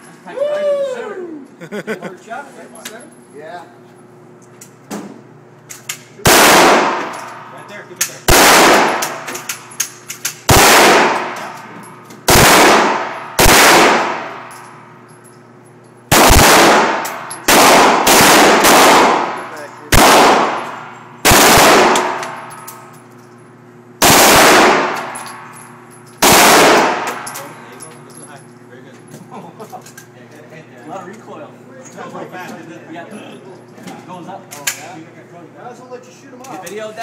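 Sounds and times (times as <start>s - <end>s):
submachine gun bursts echoing: 6.2s - 7.4s, 8.3s - 9.6s, 10.4s - 11.6s, 12.3s - 14.6s, 16.1s - 22.7s, 24.0s - 25.5s, 26.2s - 27.4s.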